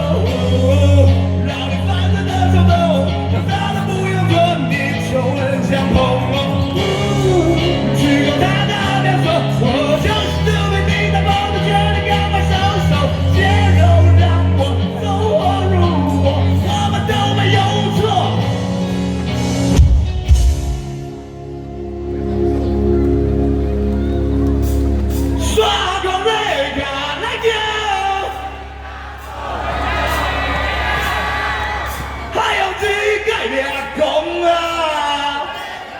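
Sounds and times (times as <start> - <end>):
person singing: 0.0 - 18.0
live rock band playing: 0.0 - 26.2.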